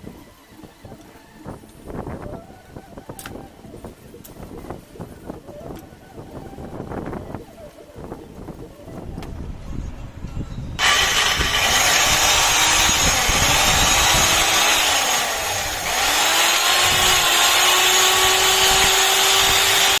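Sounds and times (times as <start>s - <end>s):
electric cutter whining: 10.8s - 20.0s.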